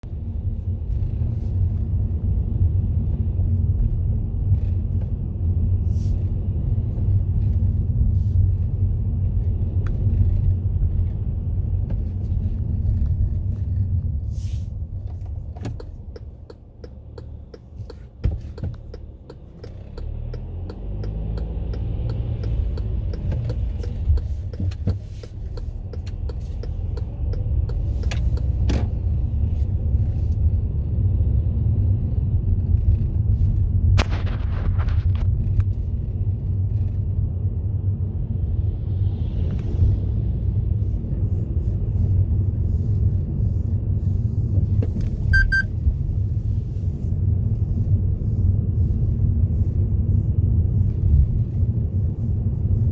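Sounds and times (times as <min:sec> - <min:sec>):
car engine and tyres rumbling: 0:00.0 - 0:52.9.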